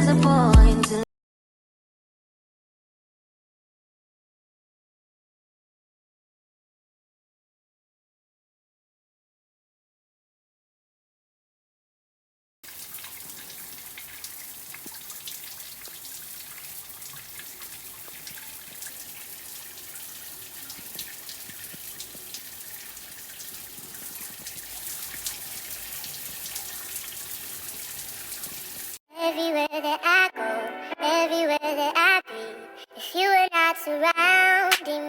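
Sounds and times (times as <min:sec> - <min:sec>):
song with singing: 0:00.0 - 0:01.0, 0:29.1 - 0:35.0
splashes and drips: 0:12.6 - 0:29.0
water running: 0:12.6 - 0:29.0.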